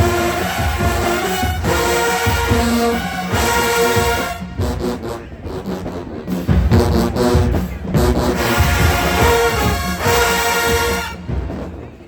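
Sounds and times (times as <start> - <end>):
brass section playing chords: 0.0 - 11.7
heavy drum hits: 6.5 - 11.6.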